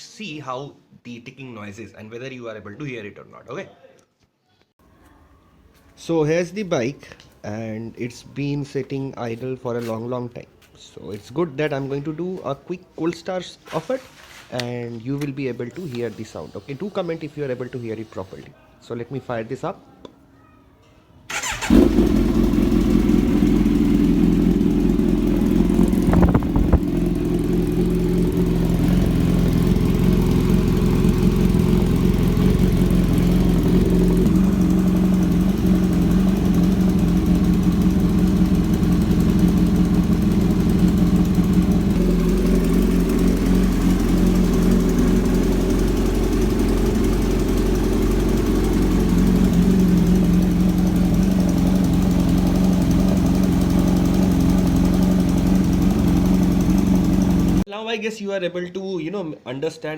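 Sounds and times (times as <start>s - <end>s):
engine ticking: 21.3s - 57.6s
motorcycle engine idling: 21.3s - 57.6s.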